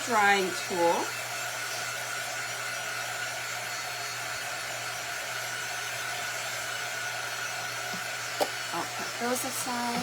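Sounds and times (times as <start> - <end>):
craft drying tool blowing air: 0.0 - 10.0.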